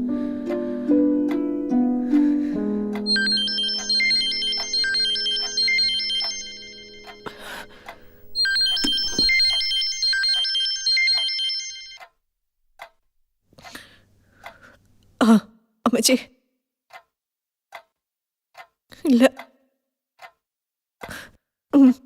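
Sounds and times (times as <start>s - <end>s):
phone ringtone beeping: 3.1s - 12.0s.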